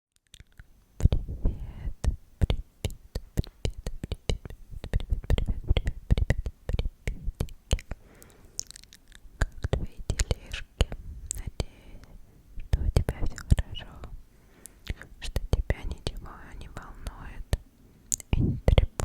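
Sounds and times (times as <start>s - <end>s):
breathy whispers: 1.1s - 2.1s, 9.4s - 19.0s.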